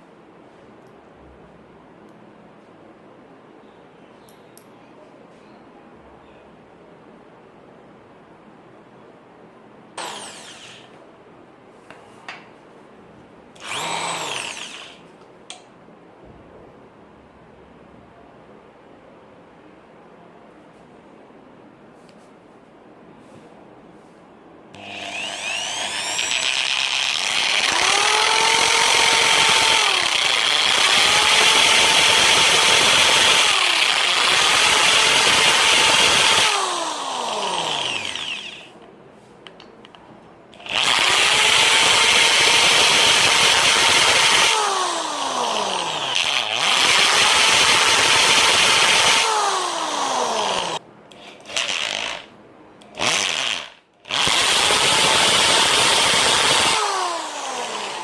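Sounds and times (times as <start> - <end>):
electric drill boring into wood: 10.0 - 10.9, 13.6 - 15.0, 24.8 - 38.7, 40.6 - 52.3, 53.0 - 58.0.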